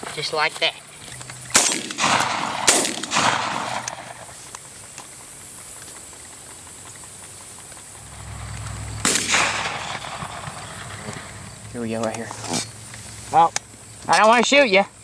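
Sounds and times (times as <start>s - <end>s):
quiet field background: 0.0s - 15.0s
shotgun shots echoing: 1.5s - 4.4s, 8.3s - 11.7s.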